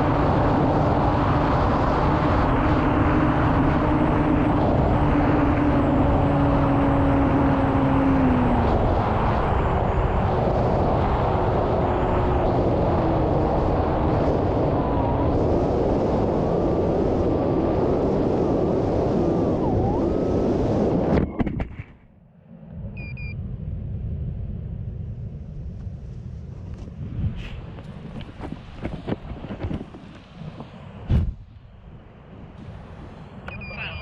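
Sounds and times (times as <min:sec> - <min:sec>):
air rushing past plane: 0:00.0 - 0:21.2, 0:22.3 - 0:34.0
light wind on microphone: 0:22.7 - 0:34.0.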